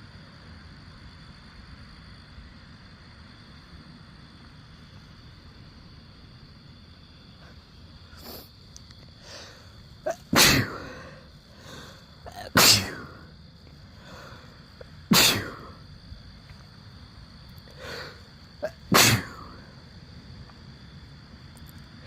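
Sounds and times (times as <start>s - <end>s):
person sneezing: 9.2s - 13.3s, 15.1s - 15.8s, 17.8s - 19.7s
short sharp inhale: 17.7s - 18.2s.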